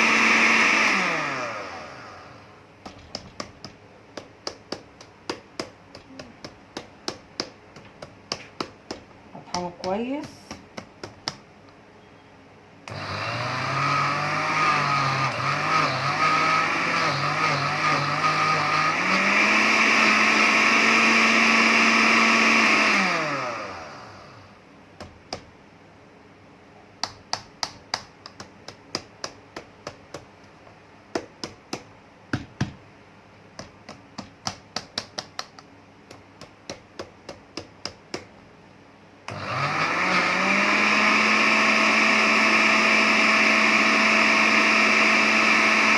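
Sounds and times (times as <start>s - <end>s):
grinder motor grinding seeds: 0.0s - 2.5s, 12.9s - 24.4s, 39.3s - 45.9s.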